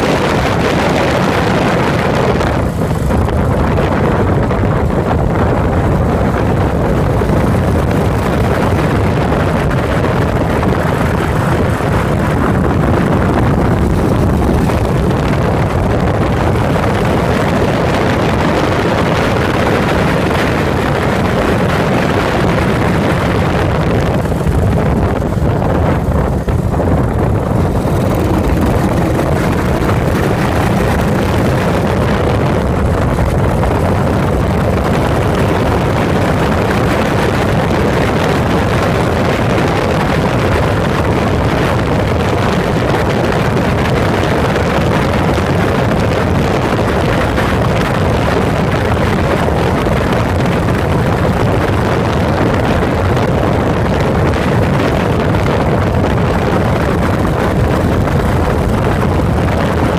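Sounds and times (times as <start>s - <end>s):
motorcycle engine running: 0.0s - 59.9s
wind buffeting microphone: 0.0s - 59.9s.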